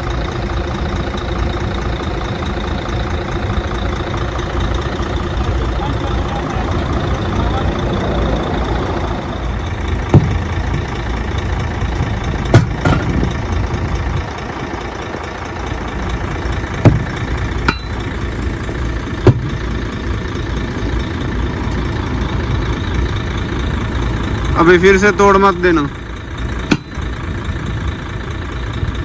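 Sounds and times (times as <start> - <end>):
truck engine idling: 0.0 - 29.0
sharp knocks: 10.1 - 10.9, 12.5 - 13.3, 16.8 - 18.1, 19.2 - 19.5, 26.7 - 27.0.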